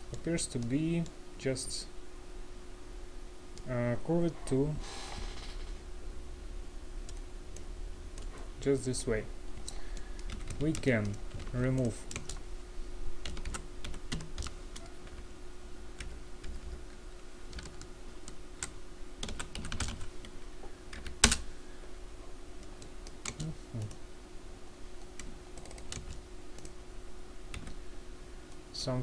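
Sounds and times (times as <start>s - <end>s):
faint steady hum: 0.0s - 29.0s
computer keyboard keys clicking: 9.6s - 12.4s, 13.2s - 15.2s, 16.0s - 16.8s, 17.5s - 17.9s, 18.6s - 20.3s, 20.9s - 21.4s, 22.8s - 24.0s, 25.0s - 26.7s, 27.5s - 27.8s.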